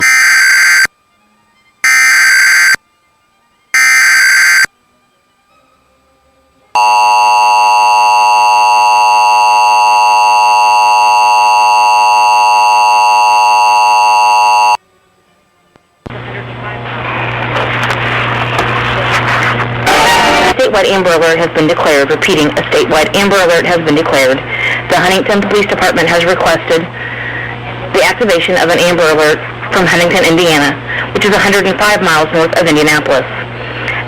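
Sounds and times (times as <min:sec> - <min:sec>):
two-tone attention signal: 0:01.8 - 0:02.8, 0:03.8 - 0:04.7, 0:06.8 - 0:14.8.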